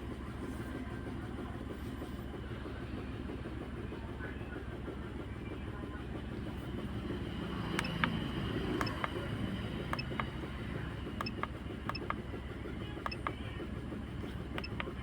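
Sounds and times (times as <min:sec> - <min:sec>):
small car engine running: 0:00.0 - 0:15.0
sharp short clicks: 0:07.7 - 0:09.3, 0:11.2 - 0:12.2.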